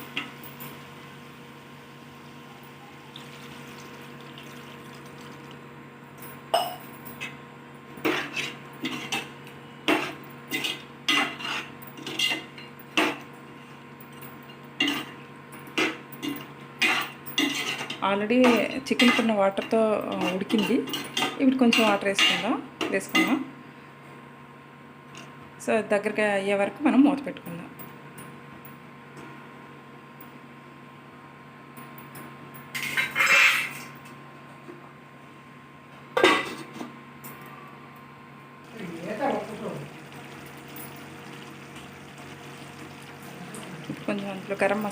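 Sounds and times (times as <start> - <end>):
spoon scraping in pan: 8.0 - 9.3, 9.9 - 12.5, 16.8 - 18.0, 32.9 - 33.7
metal cookware clanking: 14.8 - 15.2, 15.8 - 22.5
metal cookware rattling scrape: 32.8 - 33.9.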